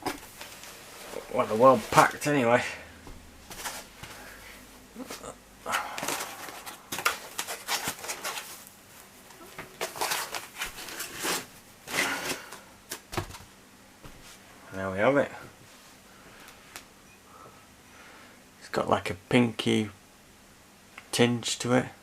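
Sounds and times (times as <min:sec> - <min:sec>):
packaging rustling and crinkling: 0:03.4 - 0:04.4, 0:05.0 - 0:13.5.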